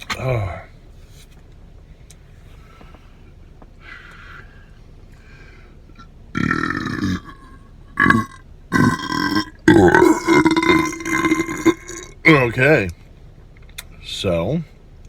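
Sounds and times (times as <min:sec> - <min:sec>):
man belching: 0:06.0 - 0:12.3.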